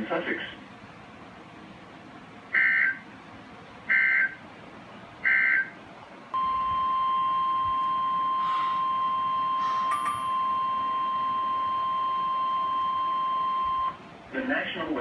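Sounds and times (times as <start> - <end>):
steady alarm tone: 2.5 - 3.0, 3.9 - 4.4, 5.2 - 5.8, 6.4 - 14.0.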